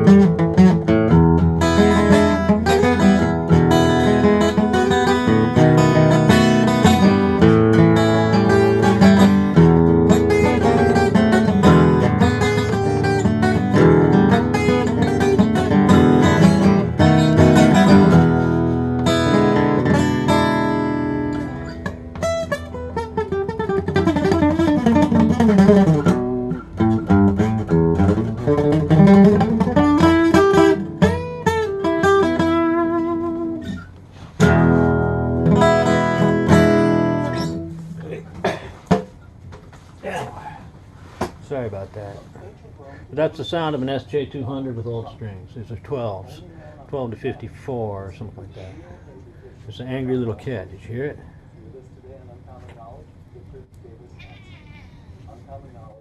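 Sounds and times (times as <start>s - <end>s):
acoustic guitar single-note runs: 0.0s - 39.1s
acoustic guitar strummed chords: 0.0s - 39.1s.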